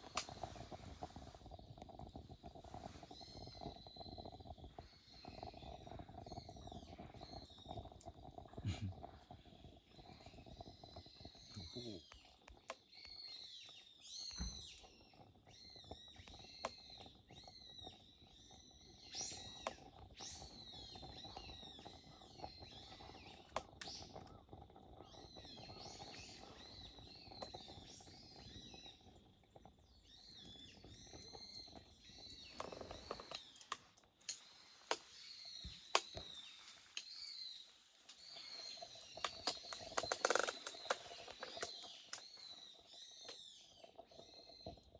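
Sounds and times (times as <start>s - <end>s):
stove whistling: 0.0s - 8.2s
wood crackling and popping: 0.0s - 44.9s.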